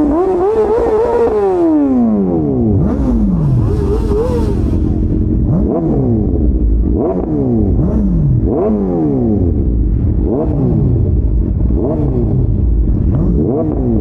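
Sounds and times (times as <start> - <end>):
motorcycle engines revving: 0.0 - 14.0
low engine rumble: 1.9 - 14.0.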